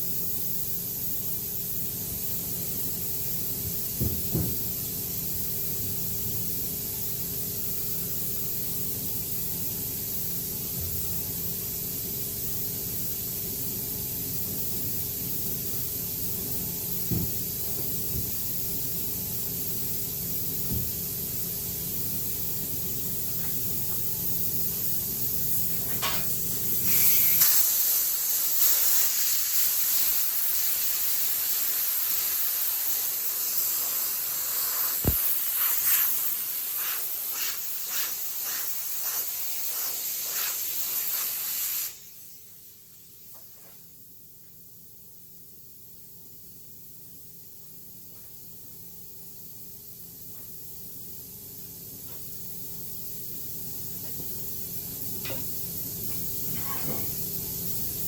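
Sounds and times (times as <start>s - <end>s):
steady hissing: 17.4s - 42.9s.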